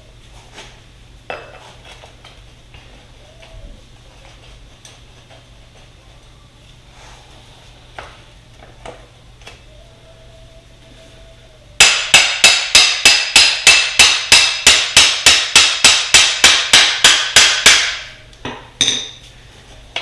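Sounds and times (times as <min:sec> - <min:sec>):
hammer striking metal: 0:11.8 - 0:19.2.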